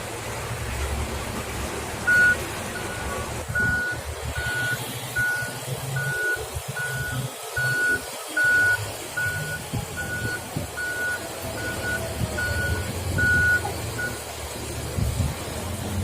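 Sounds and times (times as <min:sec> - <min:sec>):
reversing alarm beeping: 0:02.1 - 0:14.3.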